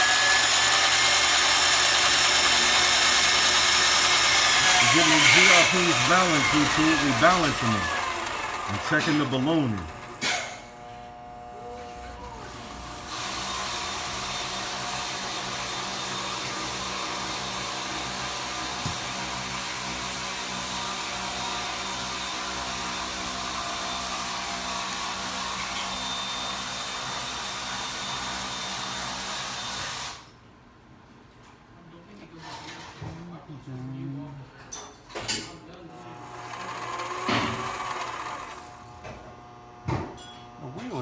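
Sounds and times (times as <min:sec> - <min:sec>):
lathe motor whine: 0:00.0 - 0:27.6, 0:36.0 - 0:41.0.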